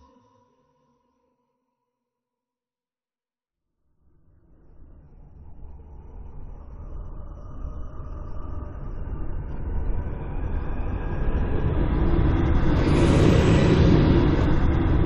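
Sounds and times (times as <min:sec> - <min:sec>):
low rumbling whoosh: 0:11.3 - 0:15.0.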